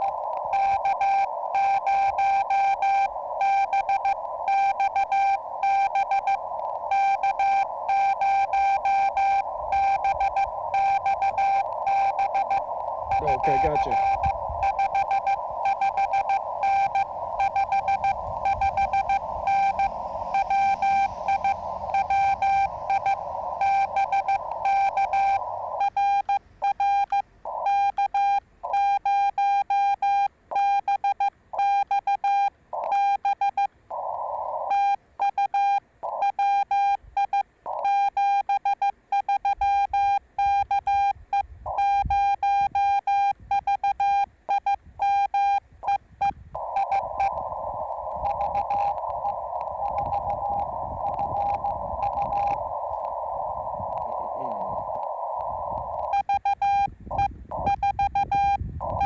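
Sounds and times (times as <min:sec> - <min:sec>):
radio band hiss: 0:00.0 - 0:27.9, 0:33.8 - 0:35.0, 0:45.9 - 0:59.0
morse code tones: 0:00.0 - 0:59.0.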